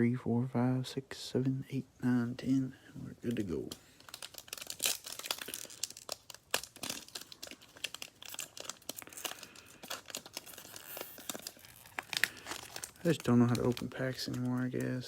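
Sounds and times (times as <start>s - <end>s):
card pack wrapper crinkling: 3.3s - 15.0s.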